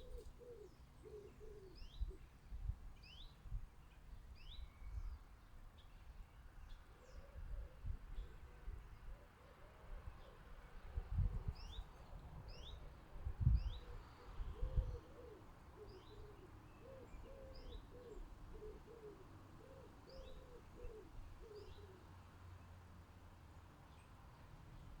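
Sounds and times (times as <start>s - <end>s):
pigeon cooing: 0.0s - 1.9s, 13.7s - 22.1s
songbird chirping: 11.6s - 22.8s.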